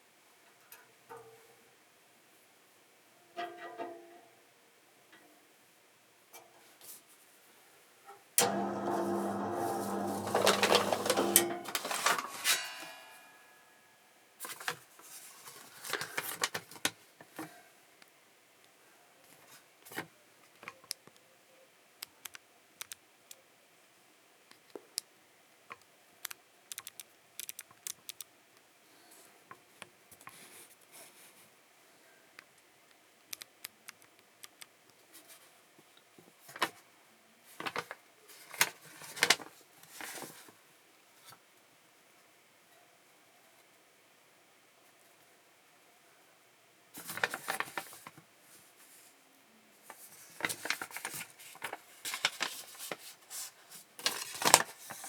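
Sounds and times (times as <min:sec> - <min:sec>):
paper handling: 0:08.5 - 0:12.9, 0:14.4 - 0:16.9, 0:37.6 - 0:40.5, 0:47.0 - 0:48.2, 0:49.9 - 0:55.0
hands handling metal parts: 0:10.1 - 0:13.0.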